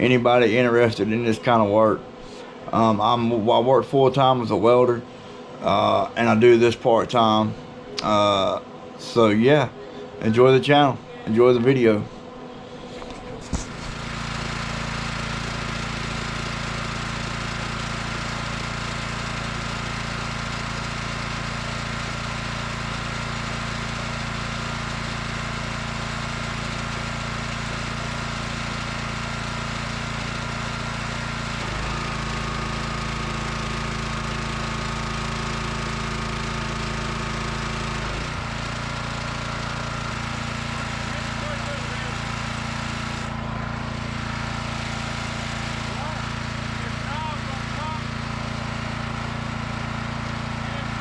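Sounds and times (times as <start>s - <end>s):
small gasoline engine running: 13.0s - 51.0s.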